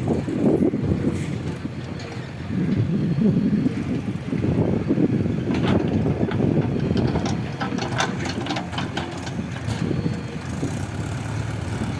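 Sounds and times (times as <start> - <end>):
heavy diesel engine running: 0.0 - 11.9
metallic clanks and clatter: 5.4 - 10.0.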